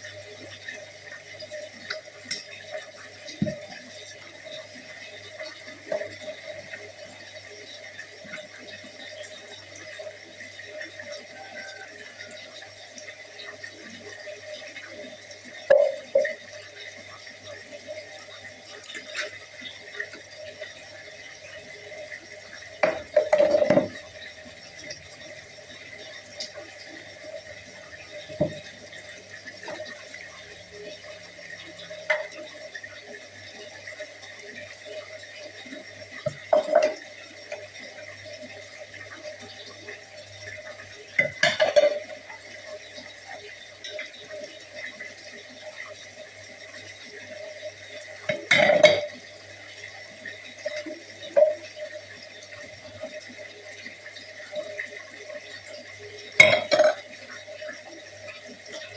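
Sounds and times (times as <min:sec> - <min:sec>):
water running in a sink: 0:00.0 - 0:58.9
dishes clinking: 0:15.7 - 0:16.4, 0:22.8 - 0:24.0, 0:36.3 - 0:37.0, 0:41.2 - 0:42.2, 0:48.3 - 0:49.2, 0:56.4 - 0:57.1.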